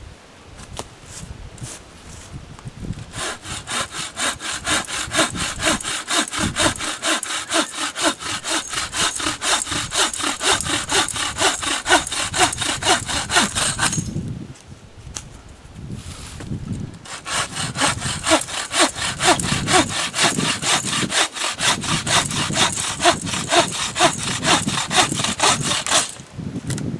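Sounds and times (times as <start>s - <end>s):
hand saw cutting branch: 3.0s - 14.2s, 17.0s - 26.3s.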